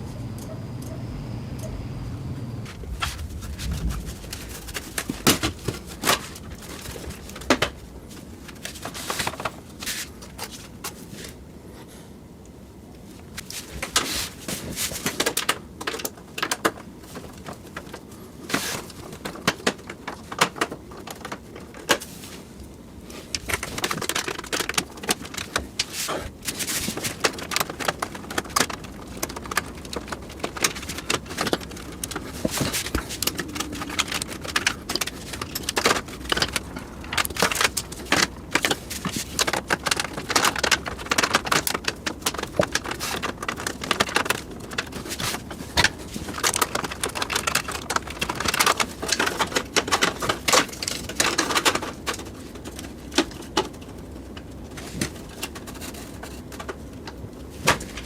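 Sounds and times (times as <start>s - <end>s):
hard parts clicking and rattling: 23.3s - 58.0s.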